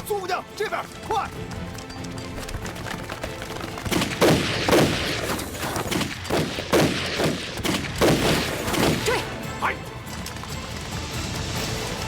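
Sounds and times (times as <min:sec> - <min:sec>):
gunshots: 0:03.7 - 0:09.3.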